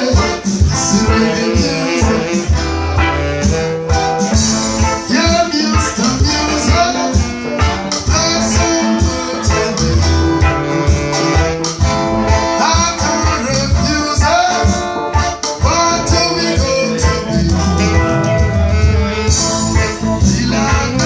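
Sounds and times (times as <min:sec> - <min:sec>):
person singing: 0:00.0 - 0:02.6, 0:04.8 - 0:10.6, 0:12.5 - 0:18.2, 0:18.9 - 0:21.0
bass line: 0:00.0 - 0:21.0
reggae band playing: 0:00.0 - 0:21.0.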